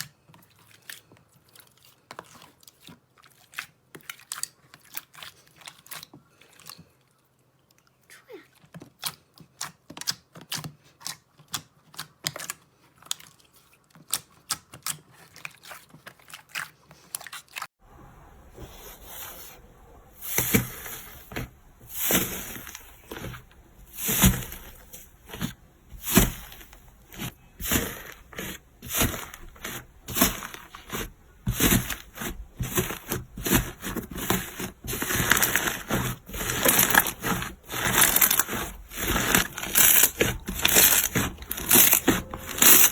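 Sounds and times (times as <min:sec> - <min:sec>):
crackly slime squish: 0:08.7 - 0:17.7, 0:24.0 - 0:42.9.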